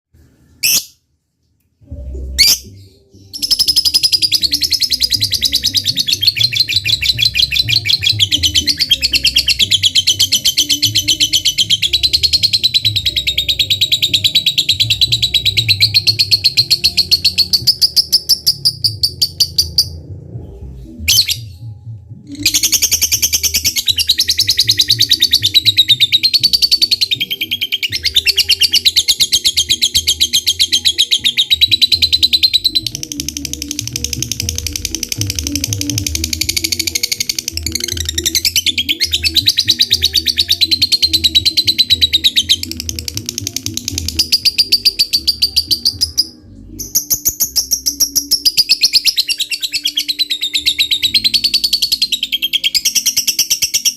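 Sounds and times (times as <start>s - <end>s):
lovebird harsh chirping chatter: 0.6s - 1.0s.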